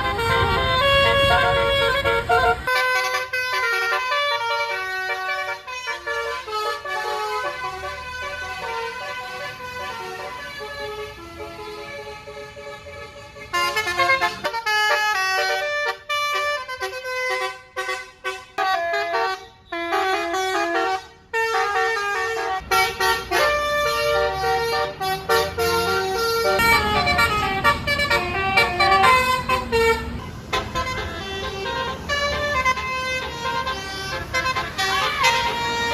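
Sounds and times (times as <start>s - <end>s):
bus multi-tone air horn melodies: 0.0s - 35.9s
bus engine revving: 22.5s - 35.9s.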